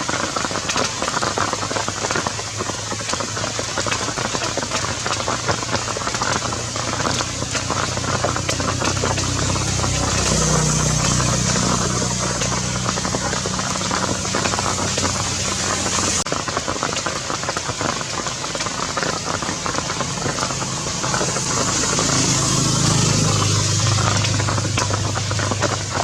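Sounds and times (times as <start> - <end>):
heavy rain pattering: 0.0 - 26.0
low steady hum: 5.5 - 16.2.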